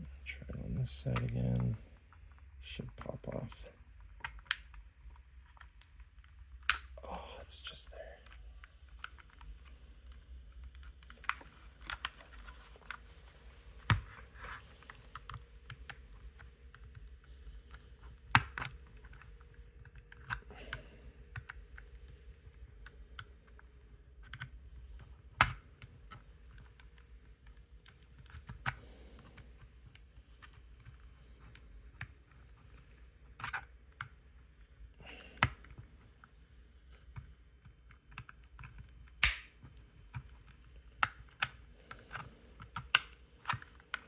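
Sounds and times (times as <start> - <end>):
pry tool clicking on plastic: 37.2 - 39.5
plastic latches snapping: 39.1 - 39.6, 41.0 - 44.0.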